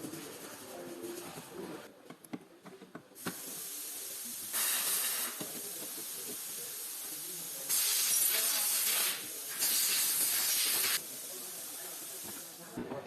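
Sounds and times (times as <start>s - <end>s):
hiss of air spray: 3.2s - 12.8s.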